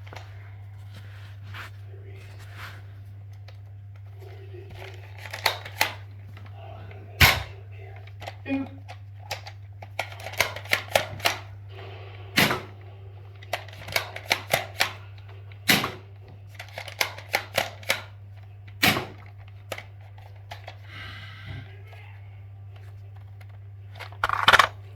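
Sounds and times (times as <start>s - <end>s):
plastic toy blaster clicking: 24.0s - 24.7s
loud plastic cracks: 24.0s - 24.8s.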